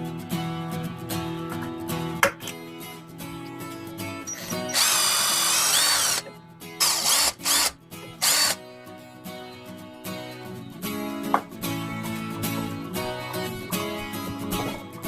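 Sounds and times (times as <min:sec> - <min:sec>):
power drill motor whine: 0:04.3 - 0:08.6.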